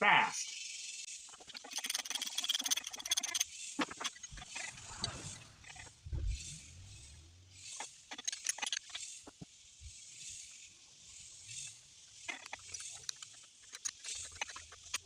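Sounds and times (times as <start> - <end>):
insects chirring: 0.0 - 15.0
ratchet and wrenches clicking: 1.3 - 4.7, 7.6 - 9.2, 11.6 - 15.0.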